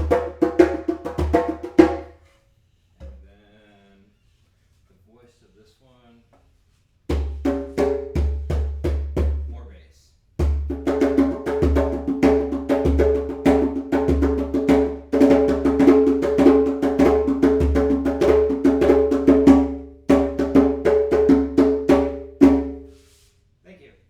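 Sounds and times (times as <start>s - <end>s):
djembe drumming: 0.0s - 2.2s, 7.1s - 9.6s, 10.4s - 22.9s.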